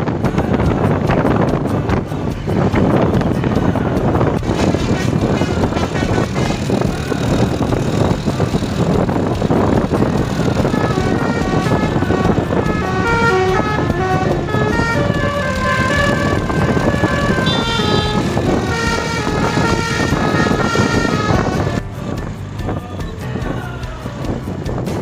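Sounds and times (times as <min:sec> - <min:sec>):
road and engine noise: 0:00.0 - 0:25.0
bus horn playing a tune: 0:04.4 - 0:07.2, 0:10.3 - 0:21.8.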